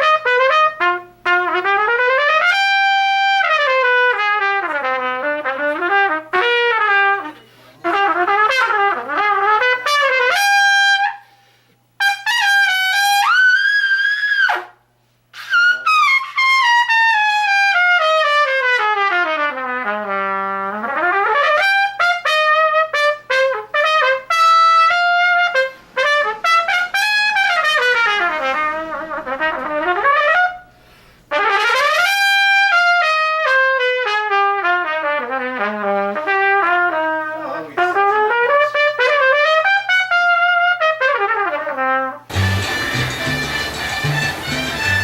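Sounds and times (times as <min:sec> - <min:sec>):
solo instrument playing scales: 0:27.8 - 0:30.7, 0:42.3 - 0:45.0.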